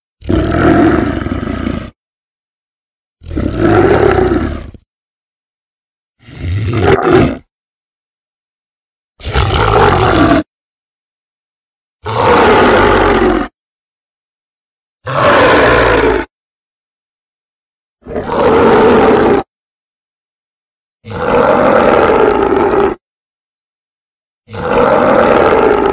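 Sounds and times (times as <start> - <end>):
loud monster roars: 12.1 - 13.5, 15.1 - 16.3, 18.1 - 19.5, 21.1 - 23.0, 24.5 - 25.9.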